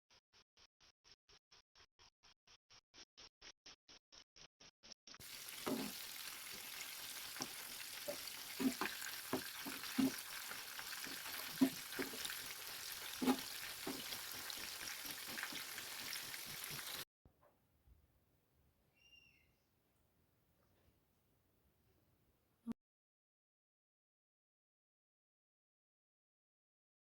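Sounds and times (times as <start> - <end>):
chicken frying in oil: 5.2 - 17.0.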